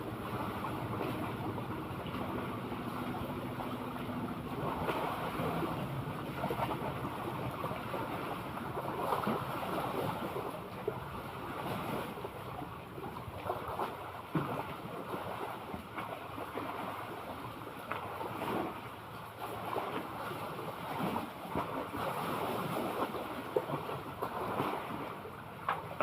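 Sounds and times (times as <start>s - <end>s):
steady low hum: 0.0s - 14.1s
sea water lapping: 0.0s - 26.0s.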